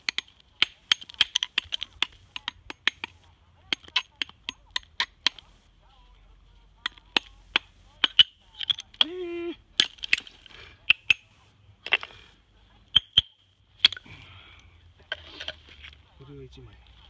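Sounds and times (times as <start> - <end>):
hammer striking stone: 0.0 - 5.4, 6.8 - 9.2, 10.9 - 11.3.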